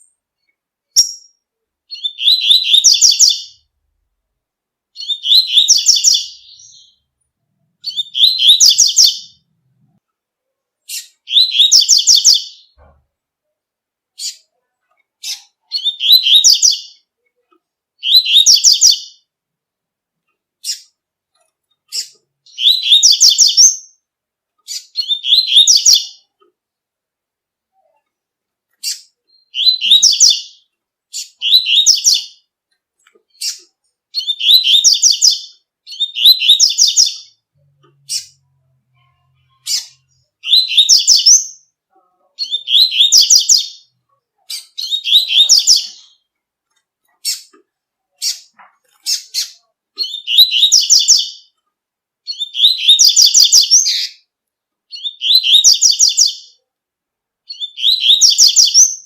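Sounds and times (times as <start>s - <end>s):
bird singing twittering phrases: 0.0s - 3.7s, 5.0s - 7.1s, 7.8s - 9.5s, 10.9s - 12.8s, 14.2s - 17.1s, 18.0s - 19.3s, 21.9s - 26.4s, 28.8s - 32.5s, 33.3s - 46.3s, 47.1s - 51.6s, 52.2s - 54.3s, 54.9s - 56.6s, 57.5s - 59.0s
sharp bird chirps: 0.9s - 3.6s, 5.0s - 7.0s, 7.8s - 9.4s, 10.9s - 12.9s, 15.2s - 17.0s, 18.0s - 19.3s, 21.9s - 24.0s, 24.7s - 26.3s, 28.8s - 32.5s, 33.3s - 37.4s, 39.5s - 41.7s, 42.4s - 43.9s, 44.5s - 46.2s, 48.2s - 51.6s, 52.3s - 54.3s, 54.9s - 56.6s, 57.5s - 59.0s.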